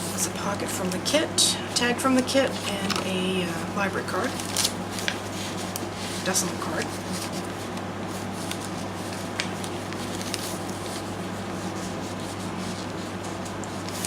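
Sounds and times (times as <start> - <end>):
air conditioner humming: 0.0 - 14.0
paper pages rustling: 2.5 - 3.2, 4.2 - 14.0.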